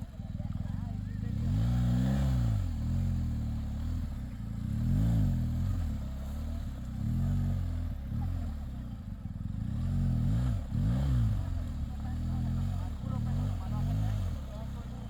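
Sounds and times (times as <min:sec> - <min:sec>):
motorcycle engine revving: 0:00.0 - 0:15.0.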